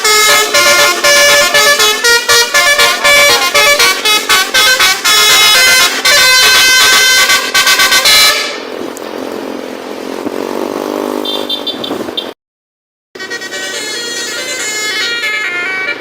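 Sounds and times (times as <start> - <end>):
musical bus horn tune: 0.0 - 8.8, 11.1 - 11.9, 13.2 - 16.0
road noise: 0.0 - 12.4, 13.2 - 16.0.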